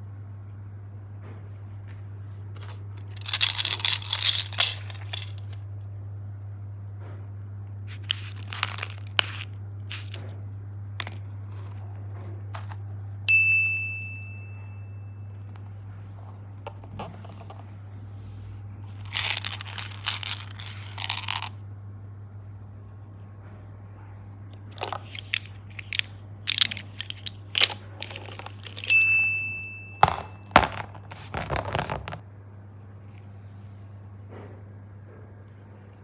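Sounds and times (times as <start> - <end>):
low electrical hum: 0.0 - 36.0
crinkling crunching handling noise: 2.5 - 5.6, 7.9 - 10.3, 18.8 - 21.5, 24.6 - 29.0, 30.0 - 32.2
short ding tone: 13.3 - 15.2, 28.9 - 30.5.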